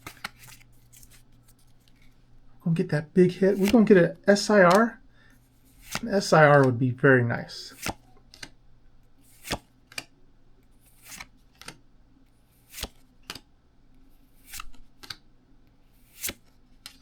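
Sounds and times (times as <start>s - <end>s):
faint room hum: 0.0s - 17.0s
cards swishing across each other: 3.3s - 4.0s, 5.5s - 6.7s, 7.7s - 8.5s, 9.2s - 10.0s, 10.8s - 11.8s, 12.4s - 13.4s, 14.1s - 15.2s, 15.9s - 16.6s.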